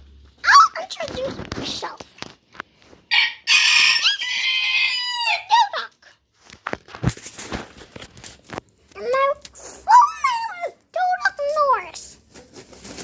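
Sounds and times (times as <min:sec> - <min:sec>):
rooster crowing: 0:03.1 - 0:05.5.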